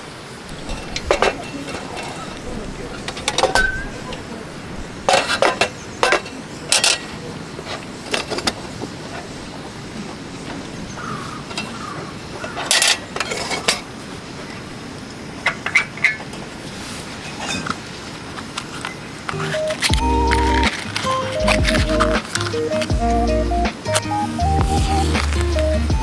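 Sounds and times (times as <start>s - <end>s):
clatters and knocks: 0.5s - 4.2s.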